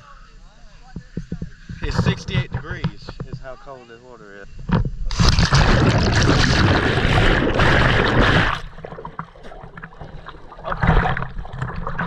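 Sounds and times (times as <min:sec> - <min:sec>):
water sloshing: 0:05.0 - 0:12.0
loud splash into water: 0:05.1 - 0:09.2.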